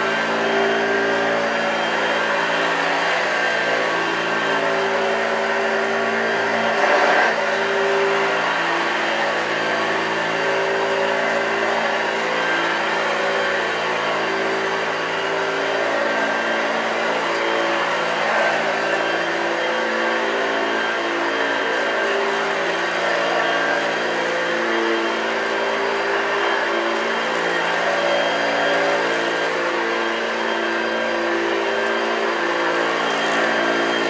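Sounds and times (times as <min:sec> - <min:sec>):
vacuum cleaner running: 0:00.0 - 0:34.0.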